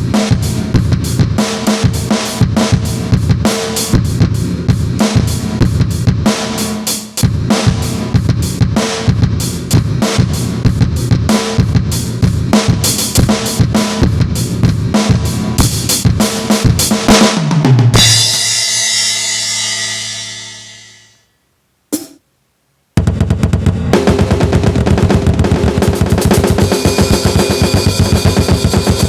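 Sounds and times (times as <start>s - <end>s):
electronic drum beat: 0.0s - 17.1s, 21.9s - 22.2s.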